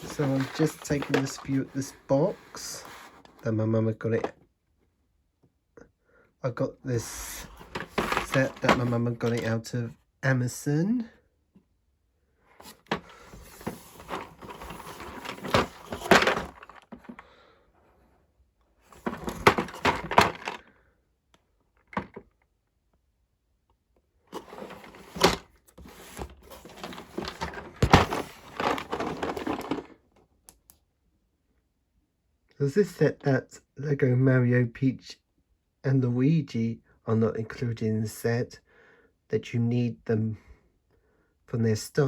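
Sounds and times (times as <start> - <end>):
cardboard box rustling and knocking: 19.0 - 20.6, 24.4 - 29.9.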